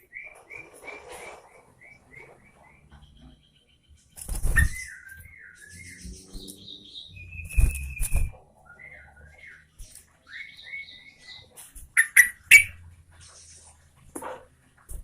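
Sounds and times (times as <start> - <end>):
bird singing wavering whistles: 4.4 - 9.7, 10.3 - 11.4, 12.0 - 12.8.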